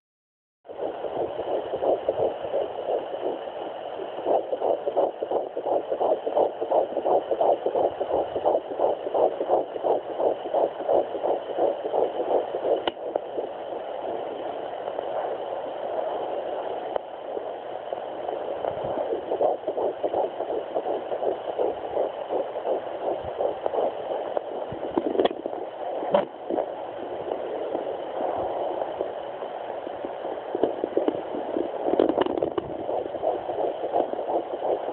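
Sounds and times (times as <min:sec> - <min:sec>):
fetal heartbeat pulsing: 0:00.7 - 0:34.9.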